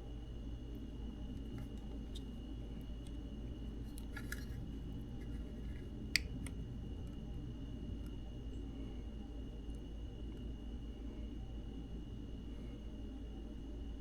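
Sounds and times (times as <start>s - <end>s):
steady low hum: 0.0s - 14.0s
capacitor ticks and taps: 5.2s - 6.6s.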